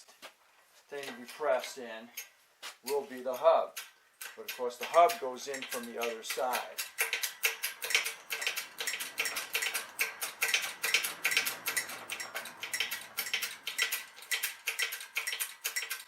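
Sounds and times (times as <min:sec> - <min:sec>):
sharp metallic clicks: 0:01.0 - 0:16.0.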